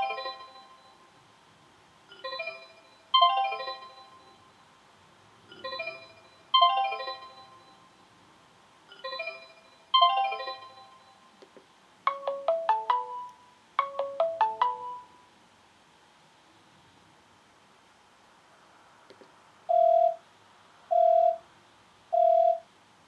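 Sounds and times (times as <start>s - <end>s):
phone ringtone chime notes: 0.0s - 1.0s, 2.1s - 4.4s, 5.5s - 7.9s, 8.9s - 11.3s, 12.1s - 15.1s.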